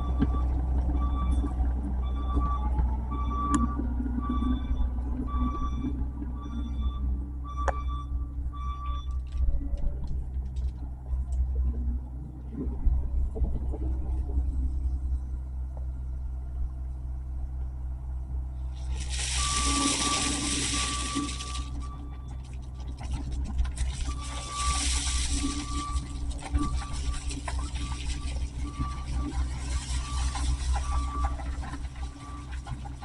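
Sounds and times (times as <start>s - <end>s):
backup alarm beeping: 0.0s - 9.4s, 19.2s - 22.9s, 24.0s - 32.9s
diesel engine rumbling: 0.0s - 33.0s.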